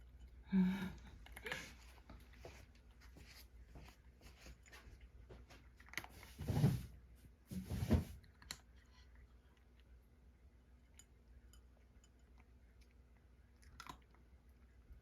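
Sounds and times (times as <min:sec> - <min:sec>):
cat crunching dry food: 0:04.6 - 0:06.4, 0:11.1 - 0:14.9.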